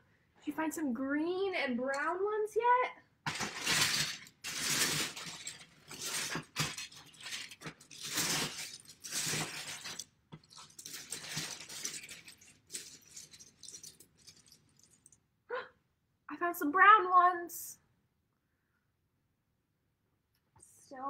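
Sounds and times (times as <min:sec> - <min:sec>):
plastic bricks clattering: 0:03.3 - 0:15.2.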